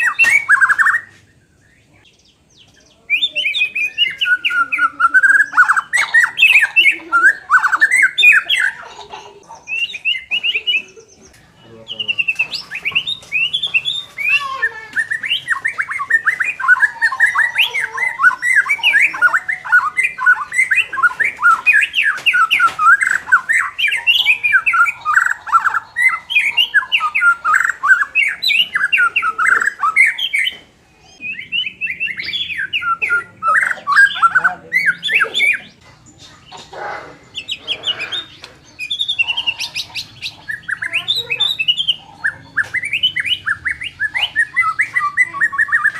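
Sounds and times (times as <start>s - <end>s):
songbird singing fast chattering song: 0.0s - 8.8s, 9.4s - 36.6s, 37.2s - 45.9s
lower rough bird calls: 0.0s - 45.9s.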